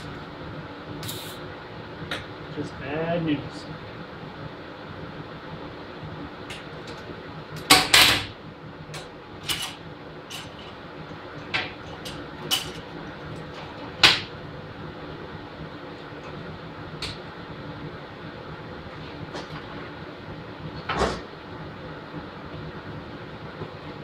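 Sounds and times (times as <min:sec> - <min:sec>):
welding hum: 0:00.0 - 0:24.0
welding crackles and pops: 0:06.4 - 0:14.4.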